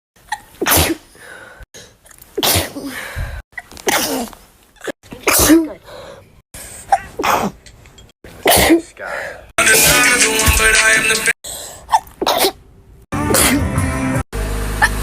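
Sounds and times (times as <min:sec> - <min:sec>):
people sneezing: 0:00.3 - 0:01.1, 0:02.4 - 0:03.0, 0:05.2 - 0:05.8, 0:13.2 - 0:13.7.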